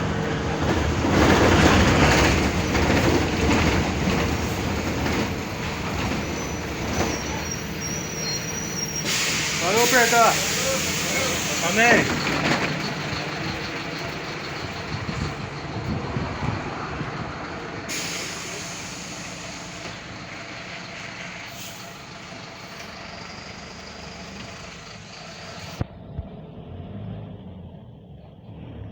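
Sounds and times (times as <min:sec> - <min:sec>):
bus engine idling: 0:00.0 - 0:26.6
bus air hiss: 0:04.4 - 0:12.4, 0:17.9 - 0:23.0.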